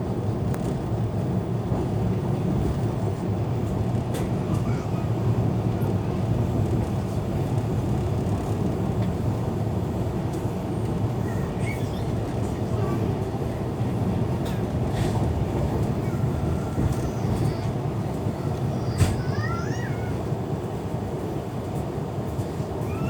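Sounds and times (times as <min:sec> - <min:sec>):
train low rumble: 0:00.0 - 0:23.0.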